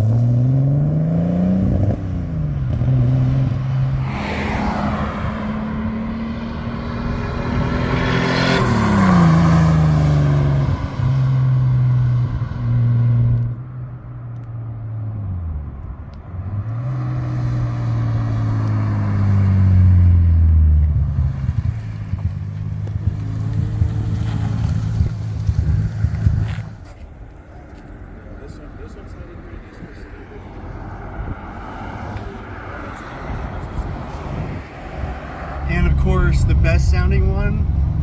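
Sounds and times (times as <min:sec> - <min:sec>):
turbocharged car engine revving: 0:02.8 - 0:11.7.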